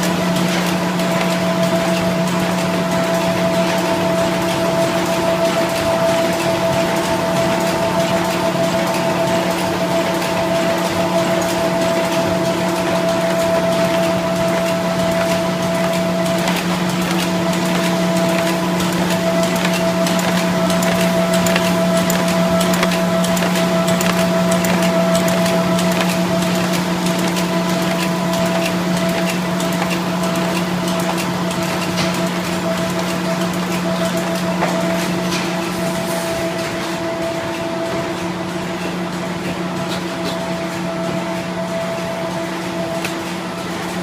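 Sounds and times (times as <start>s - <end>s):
machine hum and whine: 0.0s - 44.0s.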